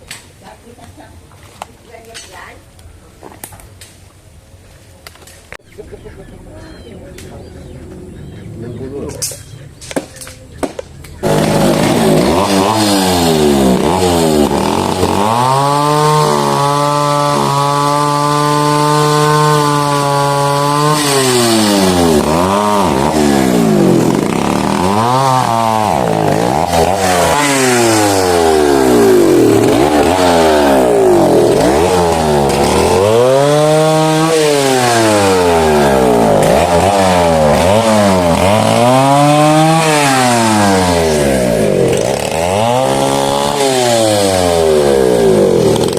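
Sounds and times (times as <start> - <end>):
chainsaw engine revving: 11.2 - 45.9.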